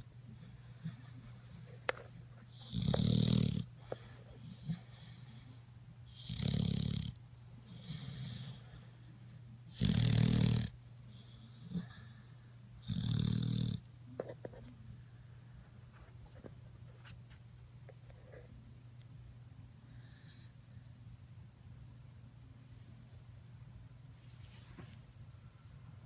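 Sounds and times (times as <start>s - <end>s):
soft hissing breaths: 0.0s - 21.5s, 22.6s - 26.0s
loud rattling snores: 2.6s - 5.5s, 6.2s - 9.1s, 9.7s - 12.2s, 12.8s - 13.8s.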